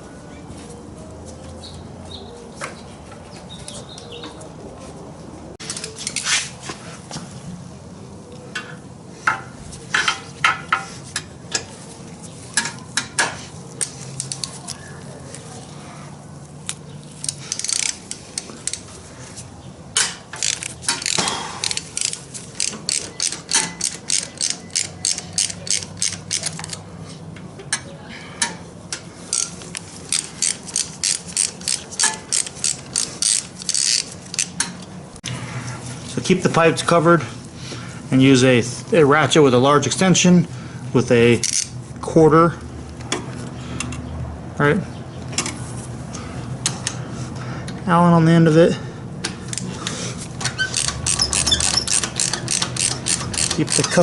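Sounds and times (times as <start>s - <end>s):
socket ratchet clicking: 20.4s - 26.8s, 29.3s - 34.7s, 50.4s - 54.0s.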